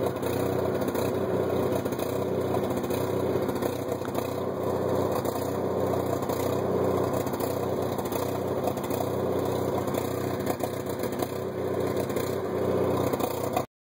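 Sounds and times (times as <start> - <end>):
generator engine running: 0.0 - 13.7.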